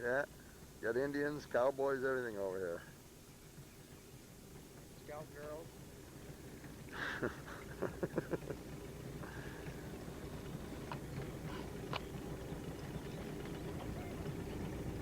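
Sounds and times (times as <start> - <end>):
outboard motor running: 0.0 - 15.0
faint clicks: 10.8 - 14.5.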